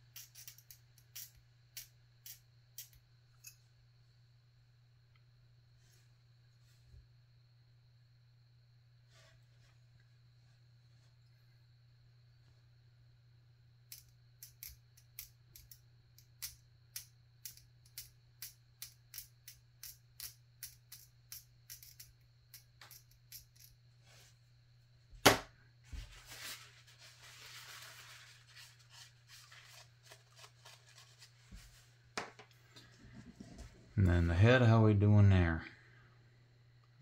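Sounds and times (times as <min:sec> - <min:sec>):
soft rubbing: 0:25.8 - 0:32.1.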